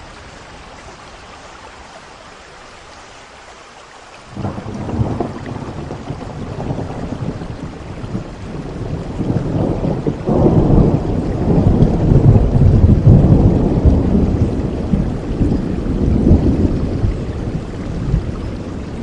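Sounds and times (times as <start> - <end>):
steady rain: 0.0 - 19.0
rolling thunder rumbling: 4.3 - 19.0.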